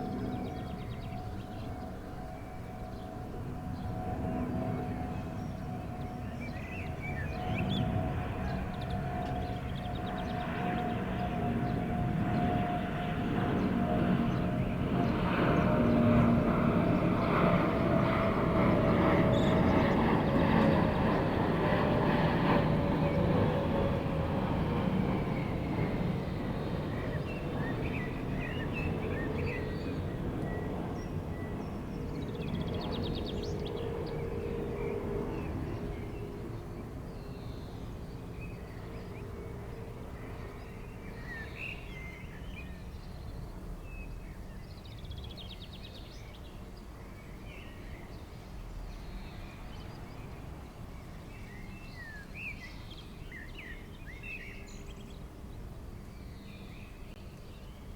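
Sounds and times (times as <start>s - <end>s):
jet engine whine: 0.0s - 46.2s
jet airliner passing overhead: 0.0s - 57.9s.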